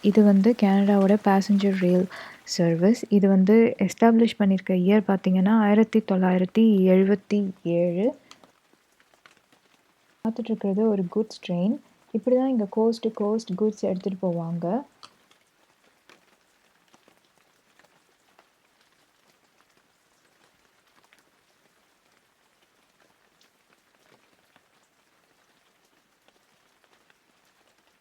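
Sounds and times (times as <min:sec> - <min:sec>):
faint hiss: 0:00.0 - 0:09.0, 0:09.8 - 0:22.0
soft ticks and crackles: 0:00.0 - 0:28.0.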